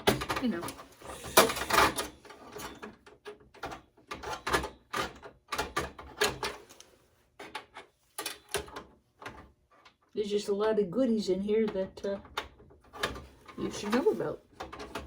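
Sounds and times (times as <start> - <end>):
computer parts clattering: 0.0 - 6.8.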